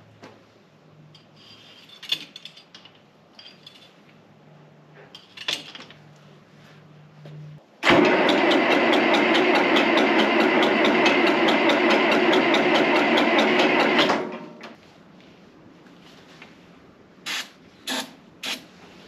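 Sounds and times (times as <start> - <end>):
tractor engine starting and running: 7.8 - 14.7.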